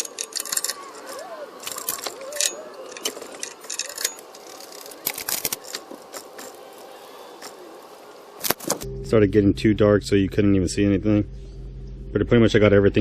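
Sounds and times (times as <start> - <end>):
metallic clicks and clinks: 0.0 - 5.8.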